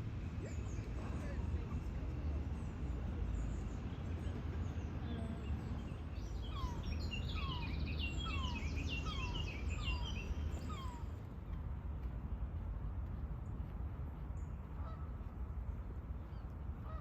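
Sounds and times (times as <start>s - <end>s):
small songbirds singing: 0.4s - 11.2s.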